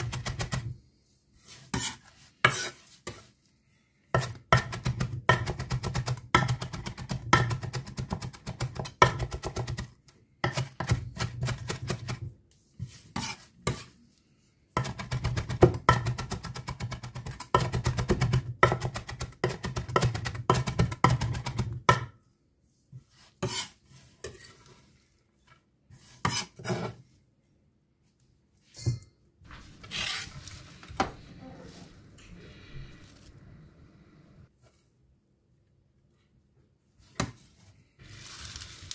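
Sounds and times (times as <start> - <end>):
knife chopping on cutting board: 4.2 - 12.3, 14.8 - 22.2.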